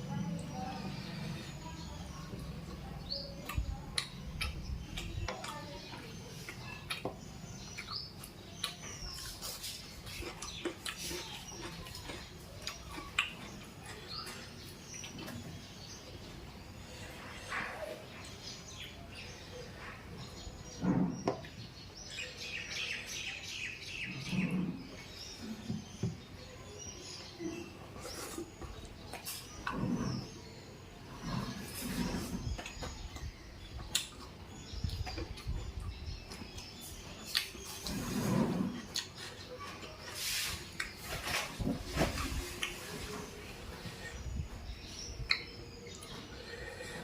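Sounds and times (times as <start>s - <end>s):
person chewing and lip smacking: 7.7s - 14.0s, 32.6s - 35.6s, 37.3s - 37.7s, 45.2s - 46.1s.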